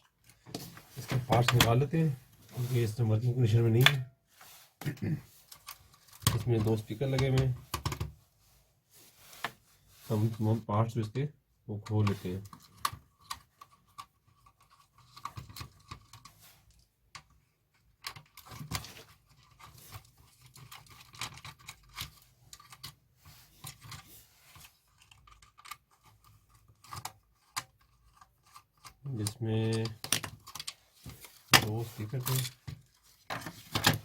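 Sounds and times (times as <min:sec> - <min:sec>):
cassette recorder parts clicking and rattling: 0:00.0 - 0:02.0, 0:05.5 - 0:08.2, 0:11.8 - 0:16.4, 0:17.1 - 0:24.0, 0:24.6 - 0:34.0.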